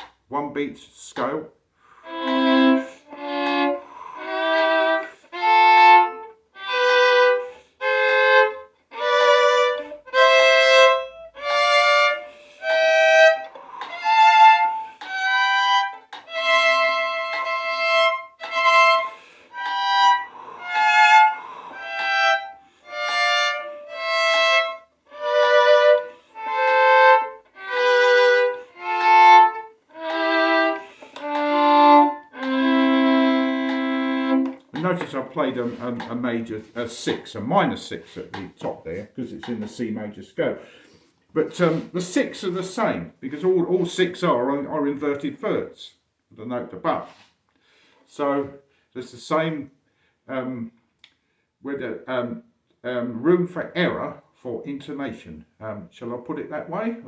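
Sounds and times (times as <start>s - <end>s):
violin playing scale in double stops: 1.9s - 37.3s.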